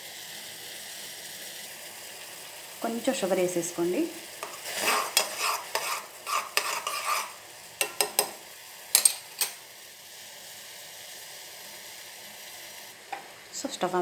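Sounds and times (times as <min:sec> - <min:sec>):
boiling pot hissing: 0:00.0 - 0:14.0
spoon clinking in a pan: 0:04.4 - 0:09.6.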